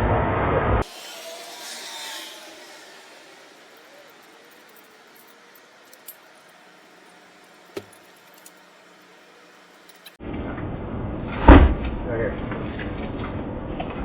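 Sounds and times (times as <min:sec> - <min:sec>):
loud steady noise: 0:00.8 - 0:10.2.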